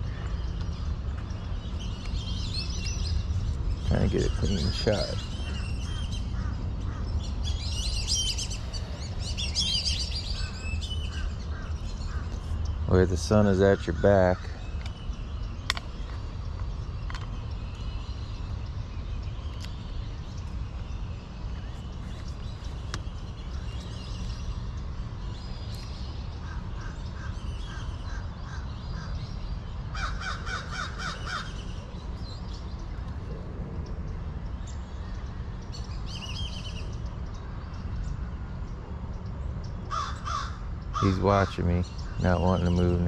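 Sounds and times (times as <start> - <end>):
steady low rumble: 0.0 - 39.9
crows cawing: 4.8 - 7.1, 10.3 - 12.4, 26.4 - 29.2, 29.9 - 31.6, 39.9 - 42.2.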